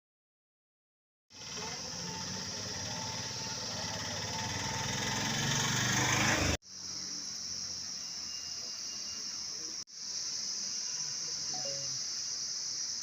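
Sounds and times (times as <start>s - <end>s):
engine running: 1.3s - 6.6s
steady high hiss: 6.6s - 13.0s.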